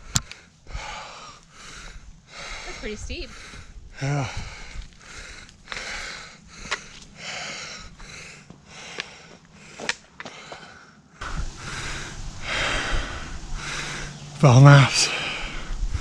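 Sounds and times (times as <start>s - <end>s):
heavy rhythmic breathing: 0.0s - 16.0s.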